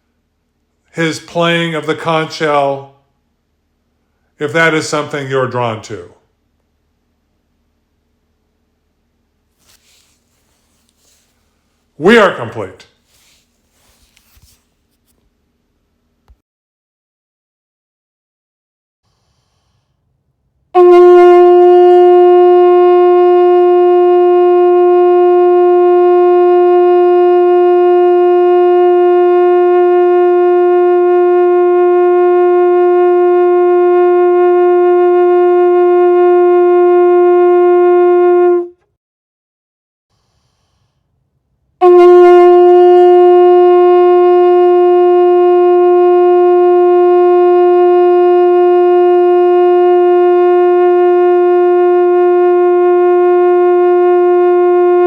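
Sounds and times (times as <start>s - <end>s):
conch shell horn blast: 0.9s - 2.9s, 4.3s - 6.1s, 12.0s - 13.0s, 20.7s - 38.9s, 41.8s - 55.0s.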